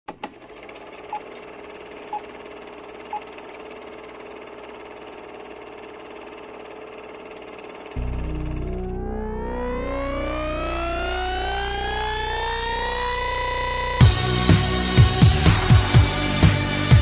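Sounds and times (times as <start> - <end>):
electronic drone: 8.0 - 17.0.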